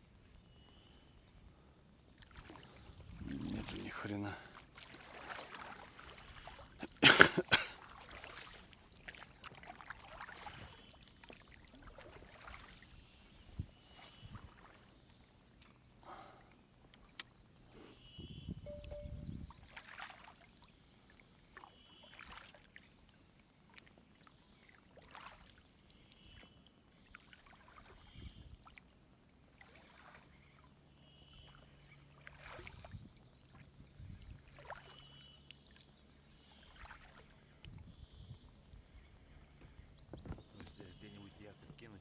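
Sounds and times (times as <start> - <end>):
water lapping against boat: 1.6 - 14.8, 19.6 - 42.0
short bird chirps: 13.1 - 15.0.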